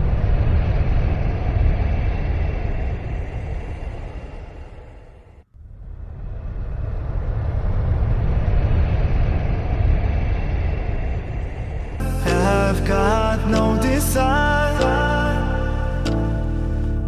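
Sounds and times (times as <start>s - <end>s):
music: 12.0s - 17.0s.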